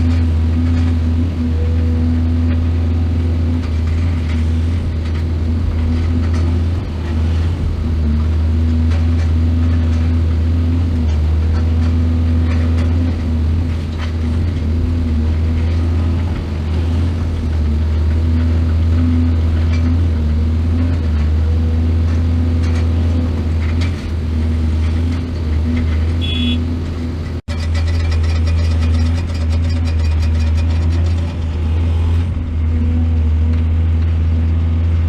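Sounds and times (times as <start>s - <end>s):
diesel engine droning: 0.0s - 35.0s
rapid even clatter: 27.3s - 32.5s.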